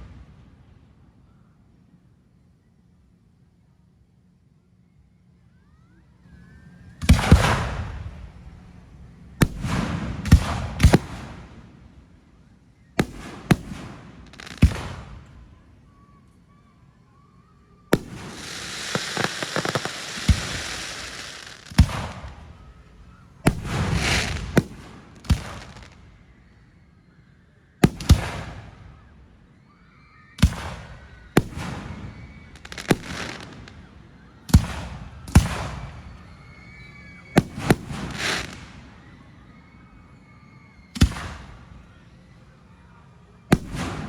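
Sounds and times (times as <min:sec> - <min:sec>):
firework booms: 0:07.0 - 0:08.4, 0:09.4 - 0:11.6, 0:13.0 - 0:15.5, 0:17.9 - 0:26.2, 0:27.8 - 0:29.0, 0:30.4 - 0:36.2, 0:37.4 - 0:38.9, 0:40.9 - 0:41.8, 0:43.5 - 0:44.0
firework crackling: 0:13.0 - 0:15.4, 0:17.9 - 0:26.2, 0:30.4 - 0:33.9, 0:37.4 - 0:39.0.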